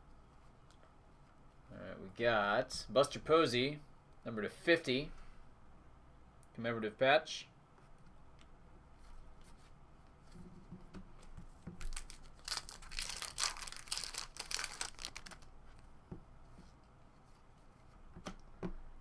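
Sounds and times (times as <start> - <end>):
foil wrapper tearing and crinkling: 11.8 - 15.5.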